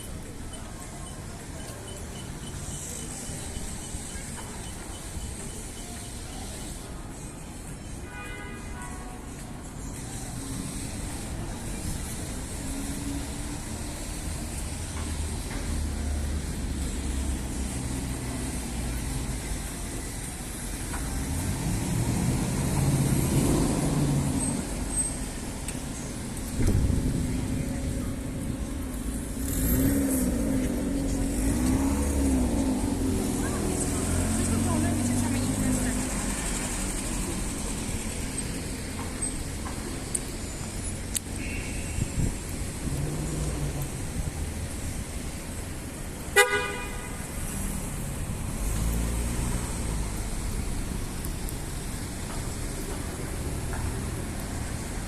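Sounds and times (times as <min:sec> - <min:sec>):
car traffic rumble: 0:00.0 - 0:55.0
vehicle horn toot: 0:08.0 - 0:09.2, 0:41.4 - 0:42.2, 0:46.4 - 0:47.2
vehicle engine passing: 0:26.7 - 0:38.8.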